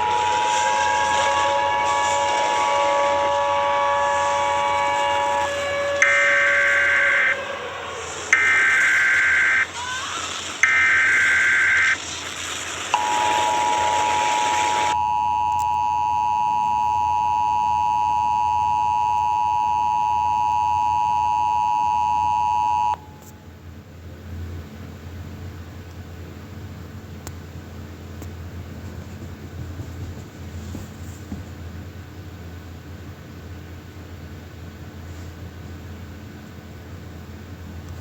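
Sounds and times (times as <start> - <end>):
two-tone attention signal: 0.0 - 7.4, 8.3 - 9.7, 10.6 - 12.0, 13.0 - 23.2
shrill digital data bursts: 0.0 - 12.0
static hiss: 0.0 - 15.0
low hum: 0.0 - 33.1.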